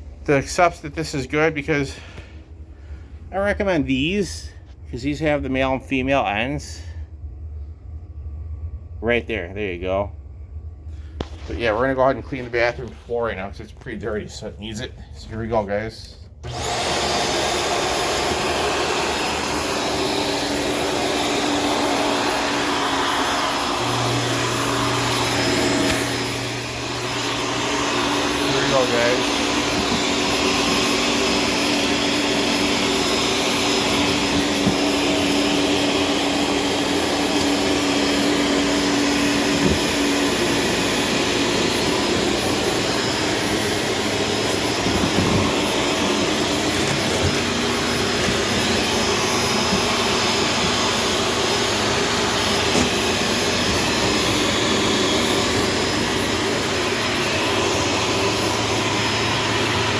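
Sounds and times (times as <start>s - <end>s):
vacuum cleaner running: 0.0s - 7.0s, 16.4s - 59.9s.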